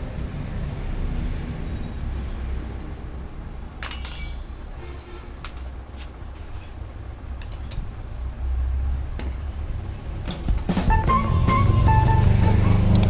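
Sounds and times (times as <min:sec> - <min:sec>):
metal parts clinking: 0:03.8 - 0:04.4.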